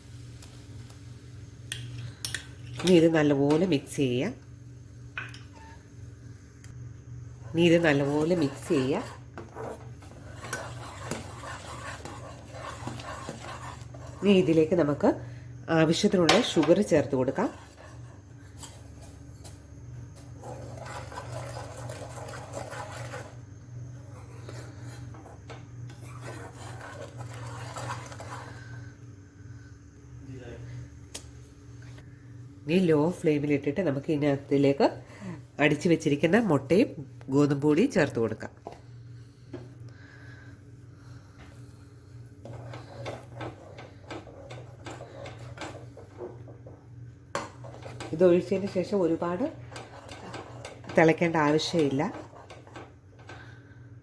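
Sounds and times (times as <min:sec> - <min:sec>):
steady low hum: 0:00.0 - 0:54.0
spoon stirring and scraping in pan: 0:07.2 - 0:15.2, 0:16.2 - 0:28.8, 0:41.4 - 0:53.7.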